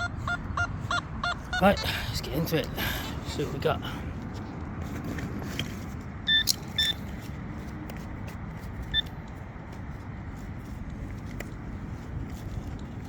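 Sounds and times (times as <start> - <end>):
metal detector short beeps: 0.0 - 2.1, 6.3 - 7.0
low wind rumble: 0.0 - 13.0.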